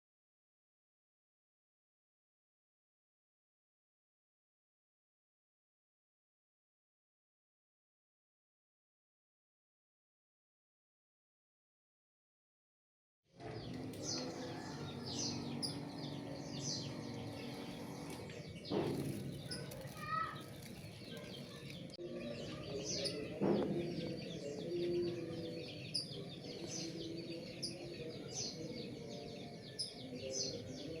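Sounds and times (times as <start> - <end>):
small birds chirping: 13.4 - 31.0.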